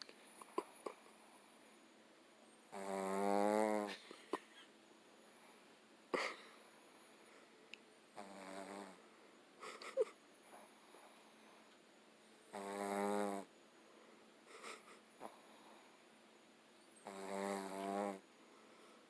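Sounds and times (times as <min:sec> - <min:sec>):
person snoring: 0:02.7 - 0:03.9, 0:12.5 - 0:13.5, 0:17.1 - 0:18.2.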